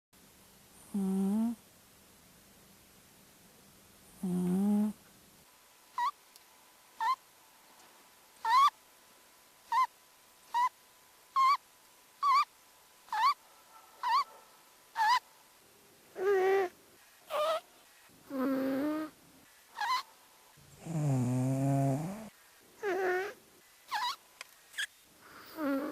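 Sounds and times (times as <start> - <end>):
sped up cat snoring squeaks: 0.9 - 1.6, 4.2 - 5.0, 6.0 - 6.2, 7.0 - 7.2, 8.4 - 8.7, 9.7 - 9.9, 10.5 - 10.8, 11.4 - 11.6, 12.2 - 12.5, 13.1 - 13.4, 14.0 - 14.2, 15.0 - 15.2, 16.2 - 16.7, 17.3 - 17.6, 18.3 - 19.1, 19.8 - 20.1, 20.8 - 24.2, 24.8 - 25.9.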